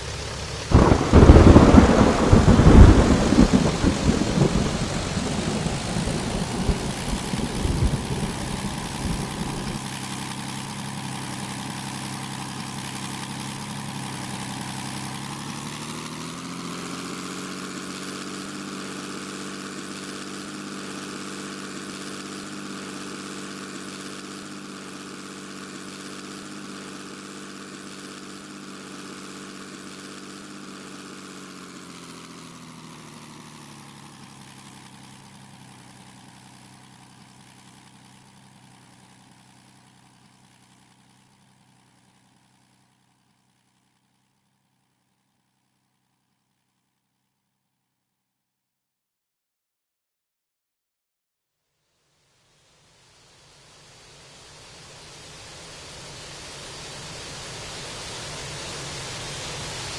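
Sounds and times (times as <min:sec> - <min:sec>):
heavy aircraft rumble: 0:00.0 - 0:16.3
aircraft engine hum: 0:00.0 - 0:27.2, 0:53.4 - 0:59.9.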